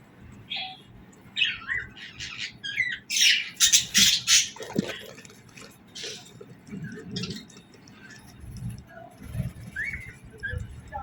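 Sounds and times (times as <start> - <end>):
budgerigars chirping: 1.4 - 4.6.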